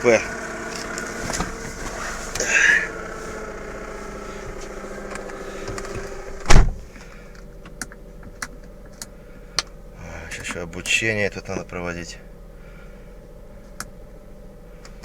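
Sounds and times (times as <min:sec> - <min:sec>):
car engine humming: 0:00.0 - 0:15.0
loud thump: 0:05.9 - 0:06.9.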